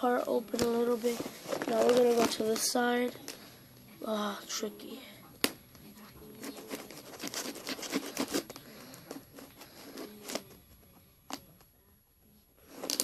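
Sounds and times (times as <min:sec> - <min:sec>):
packaging crinkling: 0:00.6 - 0:03.4
knife cutting packet tape: 0:06.5 - 0:08.6.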